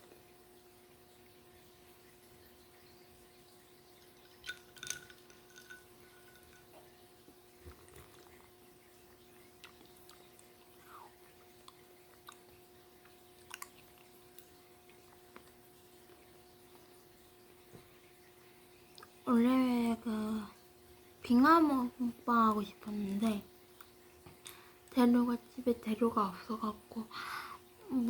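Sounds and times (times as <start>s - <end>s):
faint hum: 0.0s - 28.0s
tableware clicks and taps: 4.4s - 6.9s.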